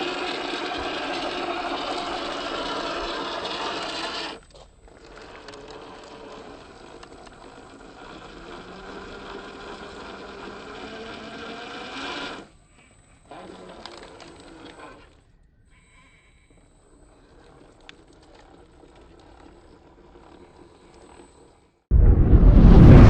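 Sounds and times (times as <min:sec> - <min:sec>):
electric motor and gears whining: 0:00.0 - 0:21.8.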